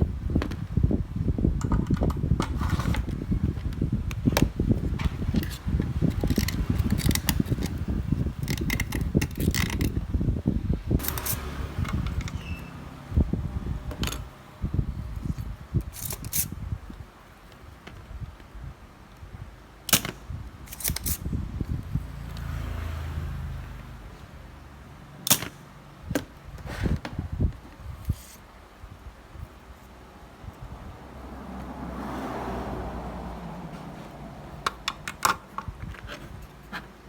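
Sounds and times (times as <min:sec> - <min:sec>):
low rumbling handling noise: 0:00.0 - 0:18.8, 0:32.6 - 0:37.0
sharp clicks and knocks: 0:01.6 - 0:10.0, 0:34.6 - 0:37.0.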